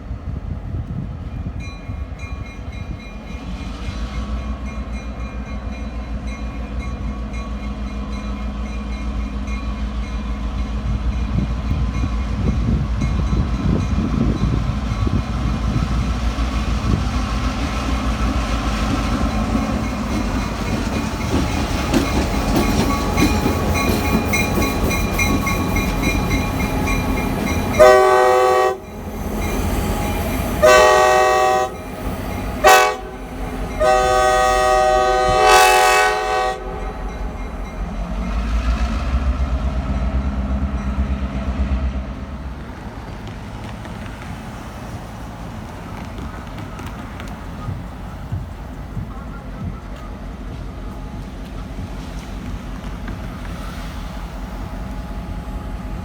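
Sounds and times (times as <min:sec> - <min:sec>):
diesel train engine and wheel rumble: 0:00.0 - 0:56.0
locomotive air horn blast: 0:27.8 - 0:28.9, 0:30.0 - 0:37.1.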